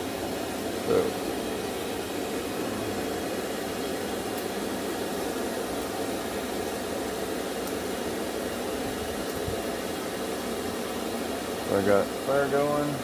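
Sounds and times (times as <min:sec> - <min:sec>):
blower air rushing: 0:00.0 - 0:13.0.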